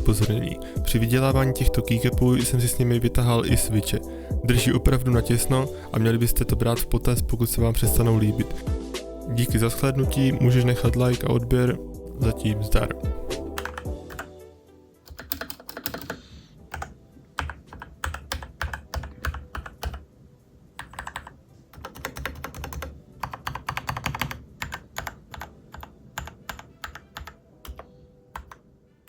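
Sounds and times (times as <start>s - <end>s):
mechanical keyboard typing: 13.6s - 14.3s, 15.0s - 20.0s, 20.8s - 28.7s.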